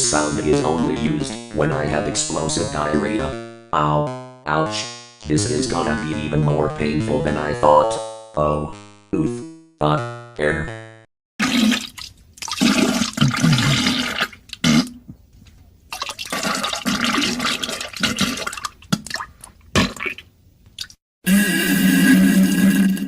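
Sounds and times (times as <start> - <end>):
cartoon diarrhea splats: 11.4 - 15.0, 15.9 - 20.3.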